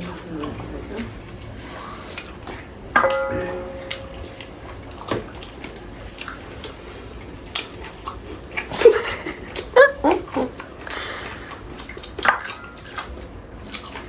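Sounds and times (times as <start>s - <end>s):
dish clinking and ringing: 2.9s - 5.7s
dishes clicking and knocking: 2.9s - 5.7s.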